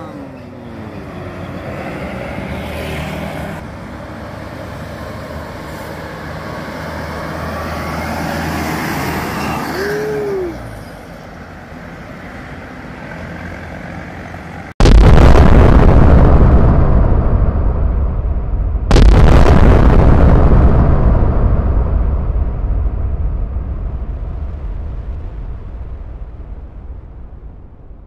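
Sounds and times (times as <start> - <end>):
bus diesel engine passing: 0.0 - 14.8
traffic: 0.0 - 14.8.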